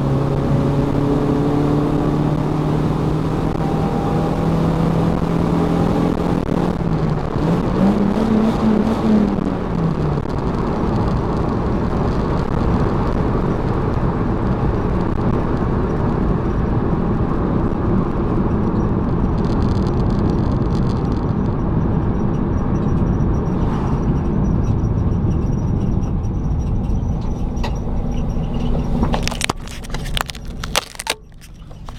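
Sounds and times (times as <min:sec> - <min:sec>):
car engine: 0:00.0 - 0:31.9
road noise: 0:00.0 - 0:31.9
sharp clicks and knocks: 0:24.6 - 0:31.9.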